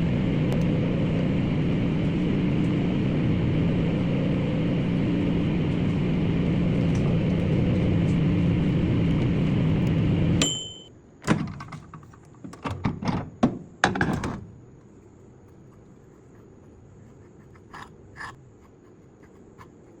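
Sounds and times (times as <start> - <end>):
microwave oven humming: 0.0 - 20.0
microwave door clicks and thunks: 11.2 - 14.5.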